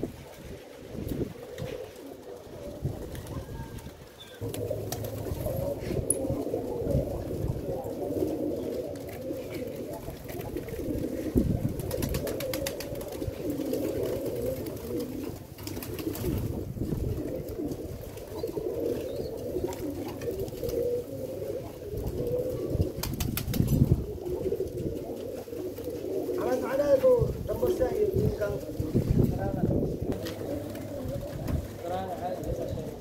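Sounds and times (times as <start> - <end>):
pigeons cooing: 0.0 - 33.0.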